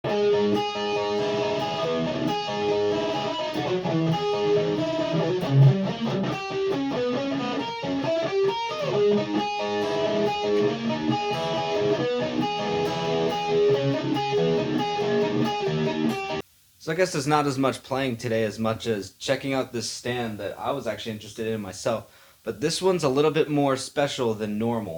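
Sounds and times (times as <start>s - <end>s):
electric guitar chords ringing: 0.0s - 16.4s.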